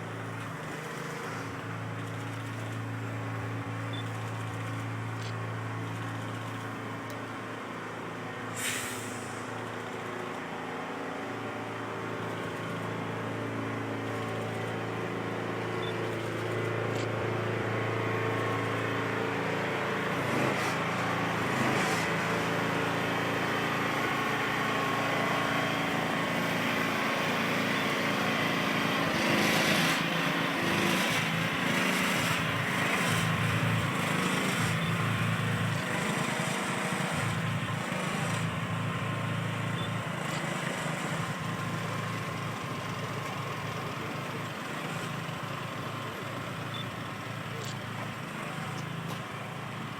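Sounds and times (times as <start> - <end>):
truck diesel engine running: 0.0 - 49.9
air hiss: 8.5 - 9.5.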